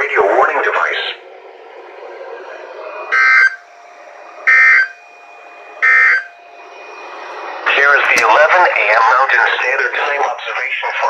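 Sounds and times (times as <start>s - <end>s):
radio hiss and hum: 0.0s - 11.0s.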